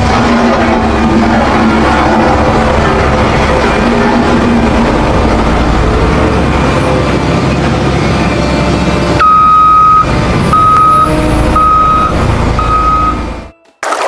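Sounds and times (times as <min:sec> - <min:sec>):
heavy vehicle engine rumble: 0:00.0 - 0:13.6
reversing alarm beeping: 0:09.1 - 0:13.6.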